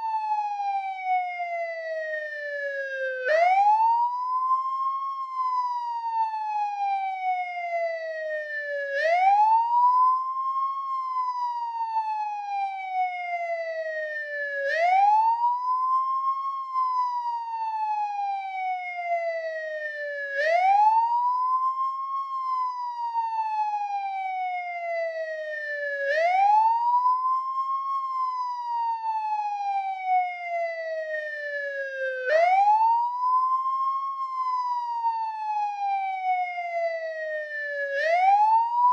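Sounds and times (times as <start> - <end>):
police siren wailing: 0.0 - 38.9.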